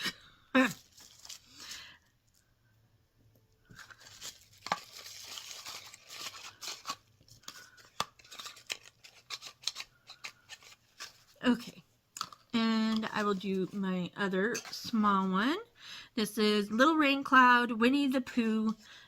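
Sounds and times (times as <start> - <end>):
paper rustling and tearing: 0.6 - 1.8, 3.7 - 11.6.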